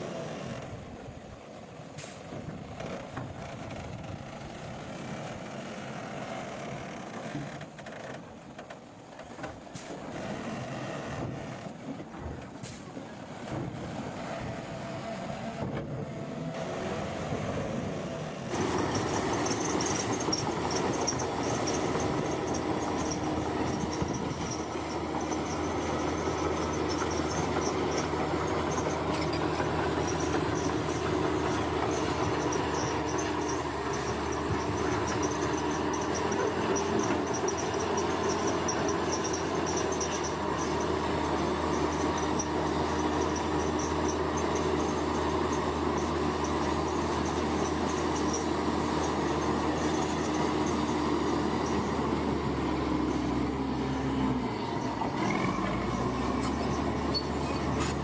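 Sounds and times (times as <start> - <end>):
bulldozer diesel engine: 0.0 - 58.0
heavy mechanical grind: 18.5 - 58.0.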